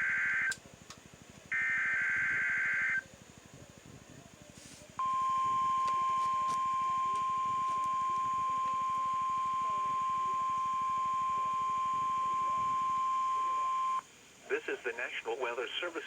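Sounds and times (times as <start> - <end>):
steady high alarm tone: 1.5 - 3.0, 5.0 - 14.0.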